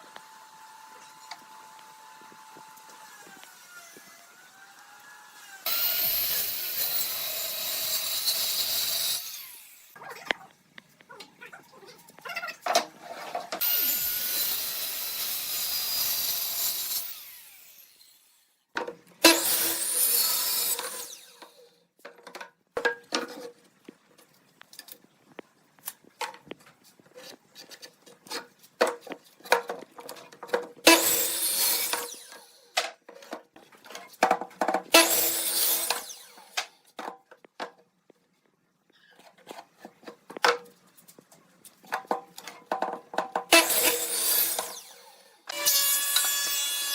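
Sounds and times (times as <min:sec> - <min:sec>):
tool working wood: 0:00.0 - 0:09.9, 0:13.0 - 0:18.4, 0:19.2 - 0:21.6, 0:27.1 - 0:37.1, 0:41.9 - 0:46.9.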